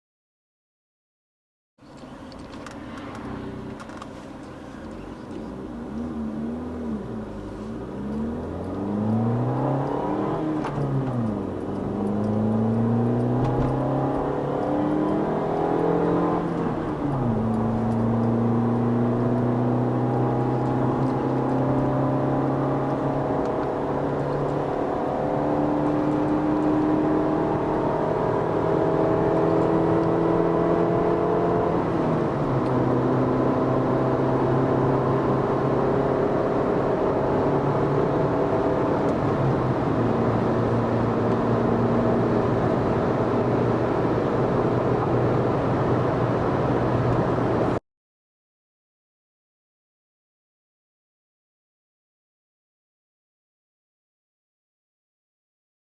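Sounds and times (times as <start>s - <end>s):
loud car engine revving: 5.4s - 47.8s.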